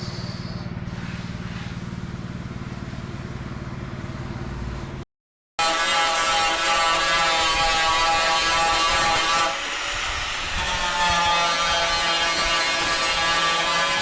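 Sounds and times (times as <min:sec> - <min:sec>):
power tool grinding: 0:05.6 - 0:14.0.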